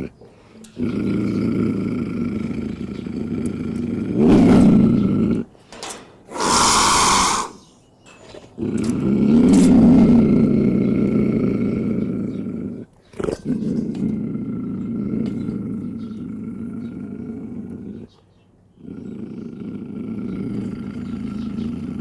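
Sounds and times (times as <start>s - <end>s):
lion growling: 0.0s - 5.5s, 6.3s - 7.6s, 8.3s - 18.2s, 18.8s - 22.0s
harsh breathy burst: 5.6s - 7.7s.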